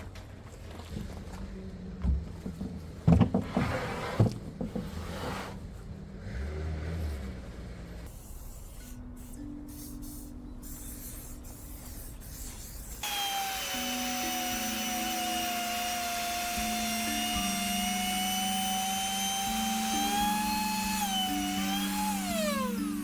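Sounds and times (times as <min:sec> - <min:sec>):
soft background music: 0:08.1 - 0:23.0
electric power tool whine: 0:13.0 - 0:23.0.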